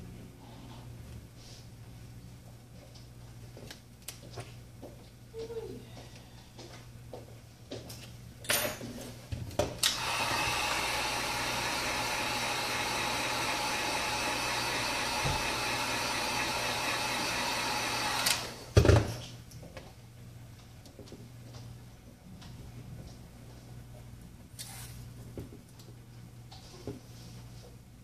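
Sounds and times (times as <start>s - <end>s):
heat gun blowing: 9.8s - 18.7s.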